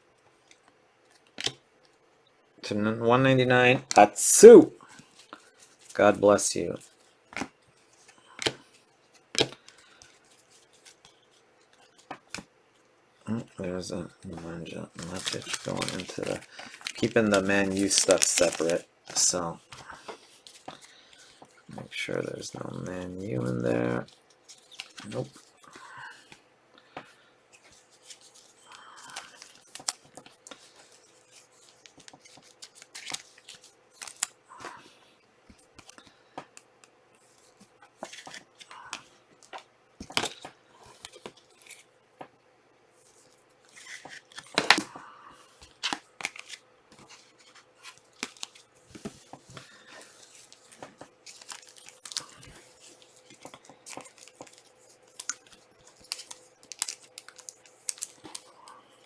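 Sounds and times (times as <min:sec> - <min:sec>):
trading cards being handled: 0:14.2 - 0:26.4, 0:27.0 - 0:34.9, 0:35.5 - 0:41.9, 0:43.0 - 0:59.0.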